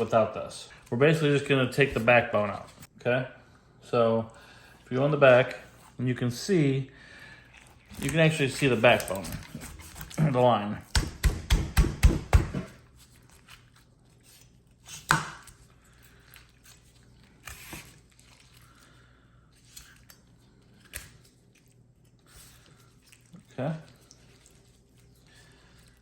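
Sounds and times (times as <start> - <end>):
knife cutting through bone: 7.6 - 12.7.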